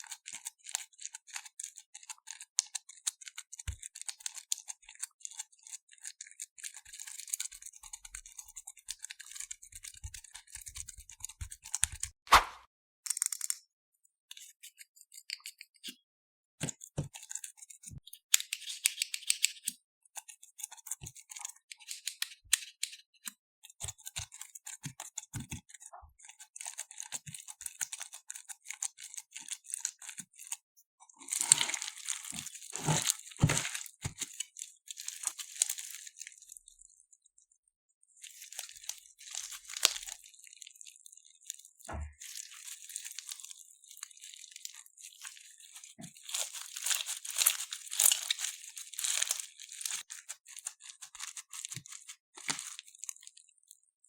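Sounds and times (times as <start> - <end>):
slime crackling and popping: 31.2 - 36.3, 46.2 - 52.9.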